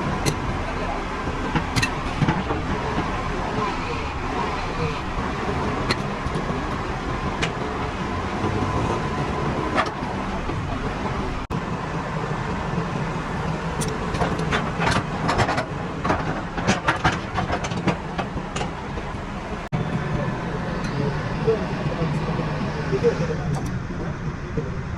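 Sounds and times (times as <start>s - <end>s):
sharp clicks and knocks: 0.0s - 11.5s, 13.3s - 19.2s, 23.5s - 23.8s
engine and traffic rumble: 0.0s - 24.9s.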